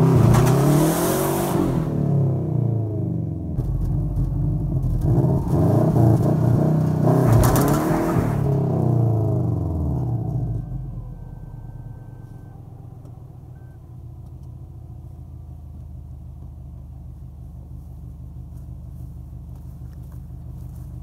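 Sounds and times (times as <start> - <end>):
car engine revving and idling: 0.0 - 21.0
faint high beep: 10.0 - 14.0.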